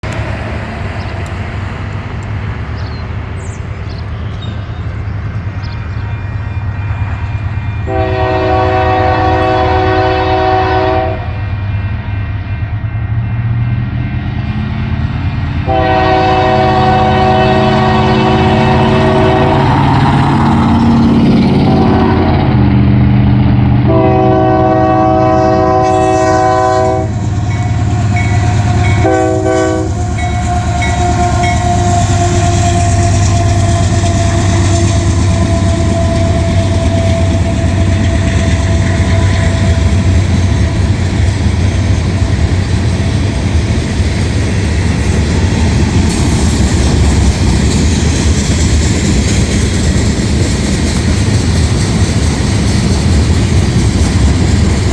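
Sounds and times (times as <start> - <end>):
locomotive engine rumble: 0.0 - 54.9
locomotive air horn blasts: 7.8 - 11.5, 15.6 - 20.1, 21.6 - 22.6, 23.8 - 41.0
wheels clacking on rail joints: 25.8 - 54.9.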